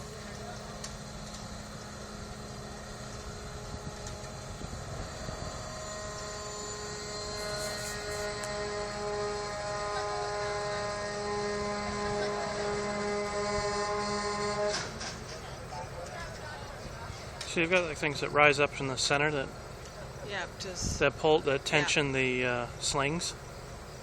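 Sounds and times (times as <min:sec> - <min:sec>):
mechanical drone with whining tones: 0:00.0 - 0:16.5.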